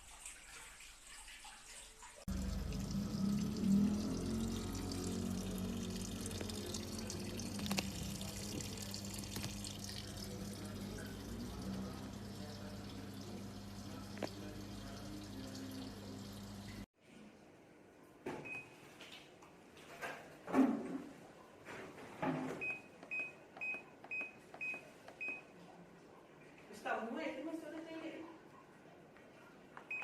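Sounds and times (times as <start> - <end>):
water running into washing machine: 0.0 - 16.9
low hum: 2.3 - 9.3.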